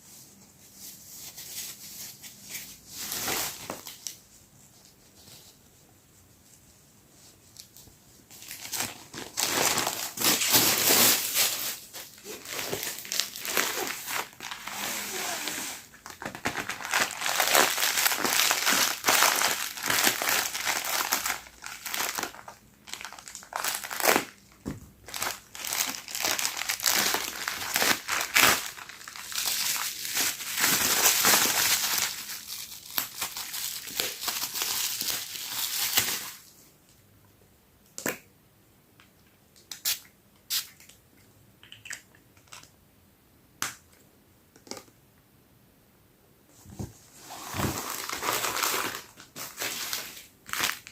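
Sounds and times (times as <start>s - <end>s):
packaging crinkling and rustling: 1.2s - 4.2s, 7.6s - 36.5s, 46.6s - 50.9s.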